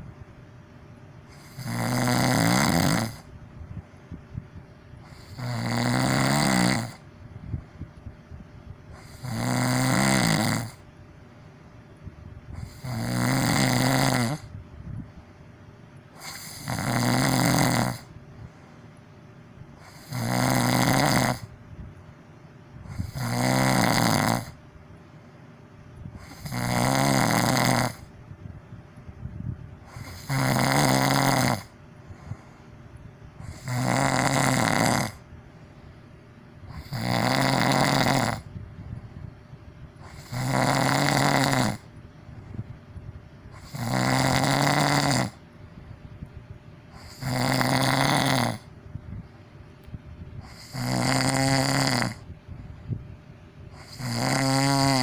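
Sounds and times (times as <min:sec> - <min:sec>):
person snoring loudly: 0:01.3 - 0:03.3, 0:05.1 - 0:07.0, 0:09.0 - 0:10.8, 0:12.6 - 0:14.5, 0:16.2 - 0:18.1, 0:19.8 - 0:21.5, 0:22.9 - 0:24.6, 0:26.2 - 0:28.1, 0:29.9 - 0:32.4, 0:33.4 - 0:35.3, 0:36.7 - 0:38.6, 0:40.0 - 0:41.9, 0:43.5 - 0:45.4, 0:46.9 - 0:48.7, 0:50.4 - 0:52.3, 0:53.8 - 0:55.0
quiet breathing: 0:17.9 - 0:20.1, 0:31.5 - 0:34.0, 0:34.6 - 0:37.0, 0:38.0 - 0:44.4.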